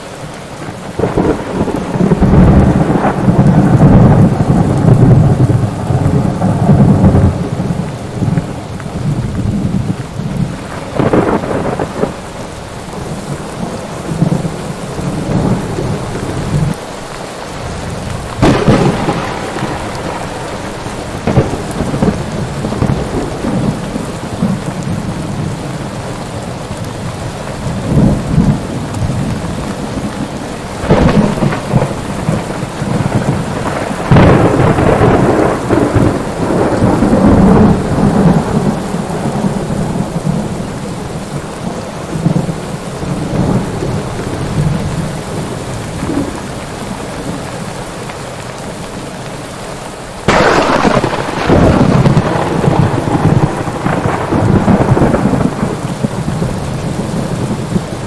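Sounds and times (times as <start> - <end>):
heavy rain: 0.0 - 58.0
thunder cracking and rumbling: 0.6 - 16.8, 17.5 - 47.5, 50.2 - 58.0.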